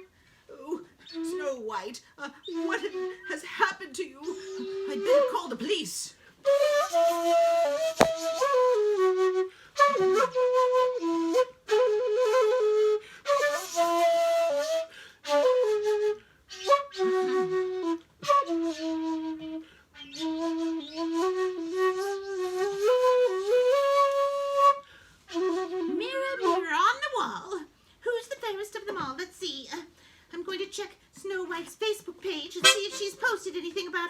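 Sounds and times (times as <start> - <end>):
flute melody: 6.5 - 19.6, 20.2 - 26.0, 32.6 - 33.2.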